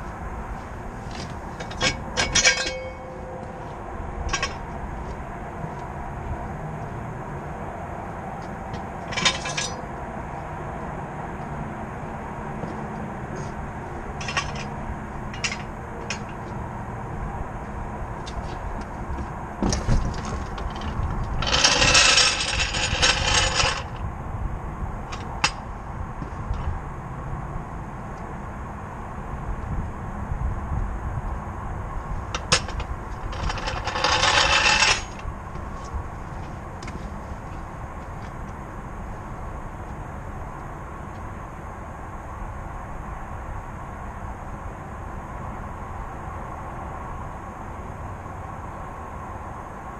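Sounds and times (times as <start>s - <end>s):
tyre and road noise: 0.0s - 49.9s
clatter of small hits: 1.1s - 3.0s, 4.3s - 4.6s, 9.0s - 9.8s, 14.2s - 14.7s, 15.3s - 16.4s, 19.6s - 24.0s, 32.4s - 35.2s.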